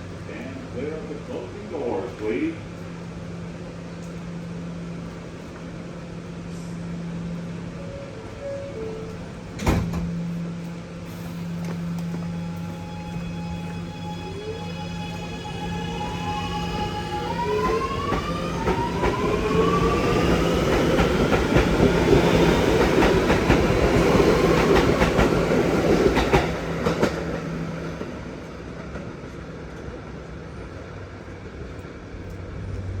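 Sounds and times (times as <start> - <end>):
electric train motors whining: 1.0 - 28.7
train wheels clacking: 11.1 - 30.2.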